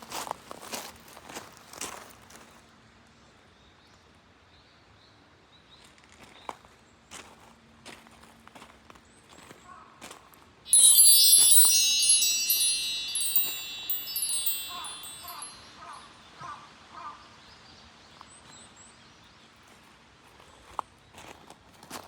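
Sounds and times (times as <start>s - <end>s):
high wind chime tones: 10.7s - 16.2s.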